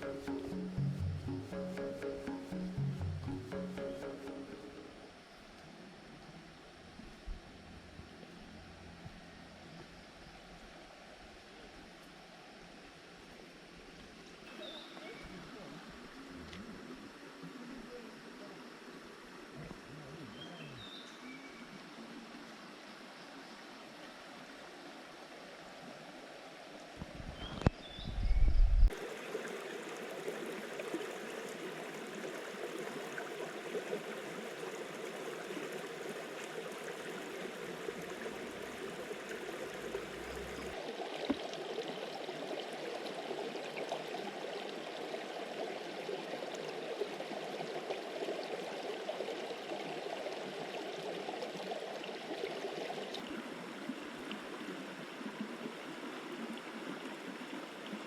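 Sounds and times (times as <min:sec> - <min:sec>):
river water flowing: 0:00.0 - 0:06.9, 0:28.9 - 0:58.0.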